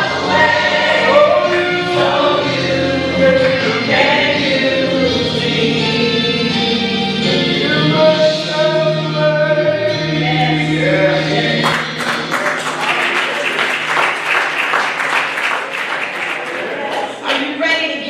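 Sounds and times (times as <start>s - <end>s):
gospel choir singing: 0.0s - 14.0s
congregation applauding: 11.6s - 17.6s.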